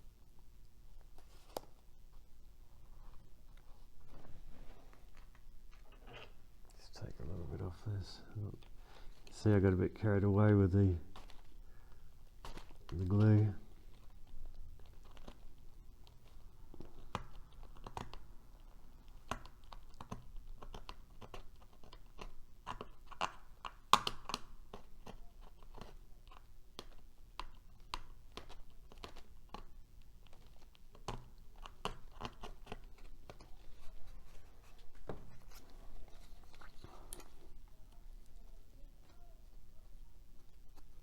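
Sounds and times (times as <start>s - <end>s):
balsa wood clicks and scrapes: 10.4s - 38.4s.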